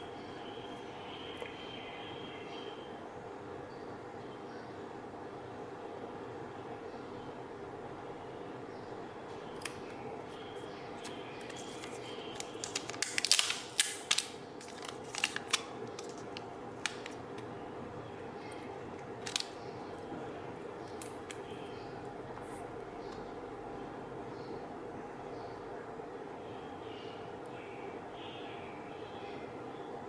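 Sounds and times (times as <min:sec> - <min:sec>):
steady low hum: 0:00.0 - 0:30.0
packaging crinkling and clicking: 0:11.0 - 0:17.5, 0:19.1 - 0:19.6.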